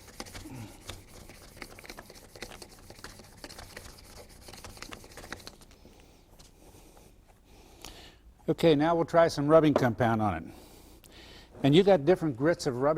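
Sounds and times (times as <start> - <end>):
sandpaper scratching plastic: 0.0 - 5.7.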